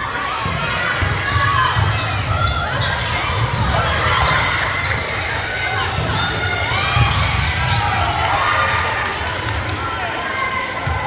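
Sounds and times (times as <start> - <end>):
voices of players and crowd: 0.0 - 11.0
sneakers squeaking: 0.2 - 8.3
ball bouncing on court: 0.4 - 8.3, 10.6 - 11.0.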